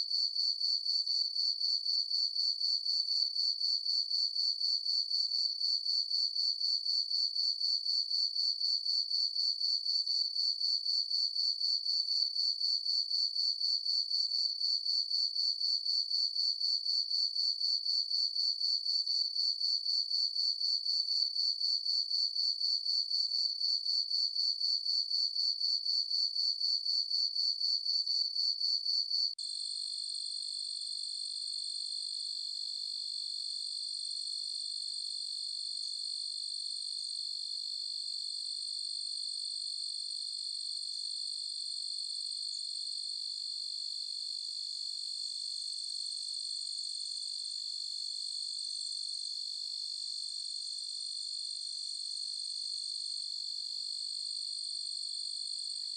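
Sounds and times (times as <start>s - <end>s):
smooth steady insect trill: 0.1s - 55.9s.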